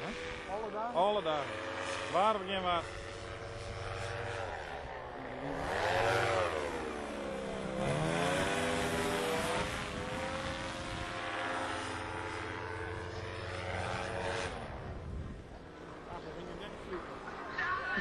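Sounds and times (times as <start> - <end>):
paramotor engine and propeller: 0.0 - 18.0.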